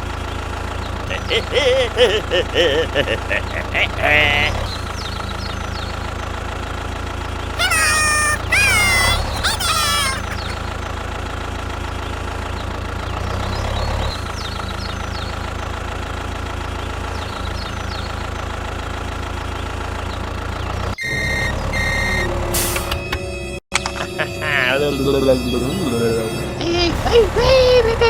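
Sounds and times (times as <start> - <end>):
vehicle engine idling: 3.8 - 7.6, 14.2 - 20.8.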